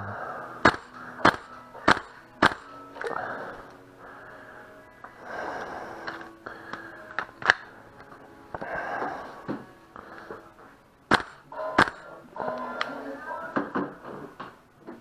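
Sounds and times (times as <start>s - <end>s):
heavy breathing: 0.0s - 13.2s
faint steady hum: 0.0s - 15.0s
airsoft gun shot: 0.6s - 2.7s, 11.1s - 12.1s.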